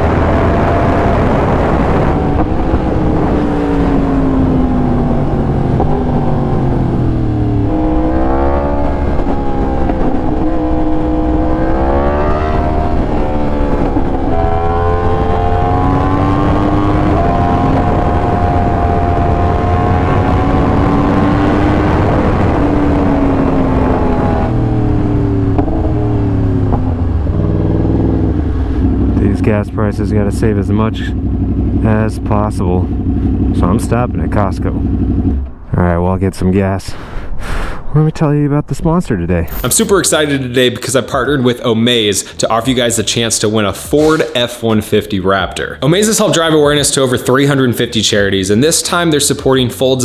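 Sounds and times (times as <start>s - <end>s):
motorcycle engine revving: 0.0s - 36.2s, 39.5s - 50.0s
wind and road noise: 0.0s - 50.0s.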